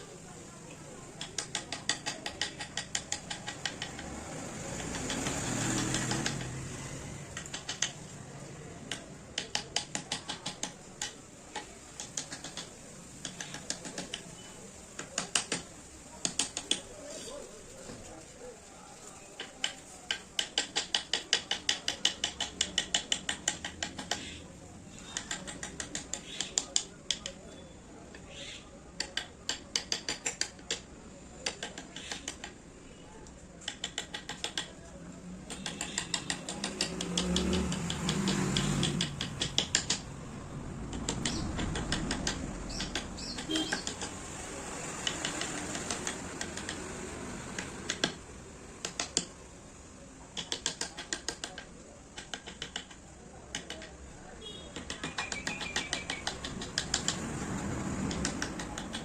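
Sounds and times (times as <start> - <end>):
mallet tapping chisel into wood: 1.2 - 4.1, 35.5 - 40.0.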